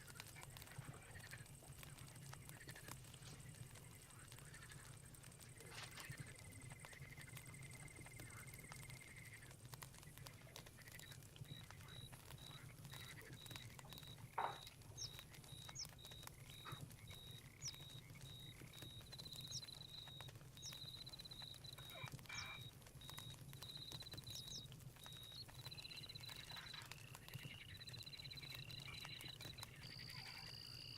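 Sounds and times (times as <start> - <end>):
campfire crackling: 0.0 - 30.9
crickets trilling: 10.9 - 30.9
high repeated chirp: 13.4 - 26.7.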